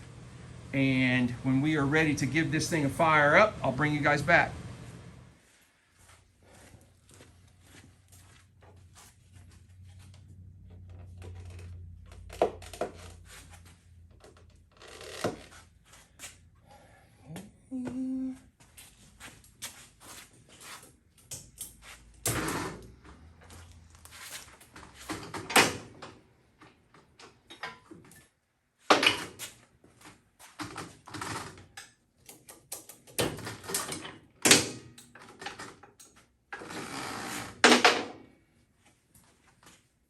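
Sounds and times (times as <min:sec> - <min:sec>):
clicks and clunks of parts: 0:31.7 - 0:36.6.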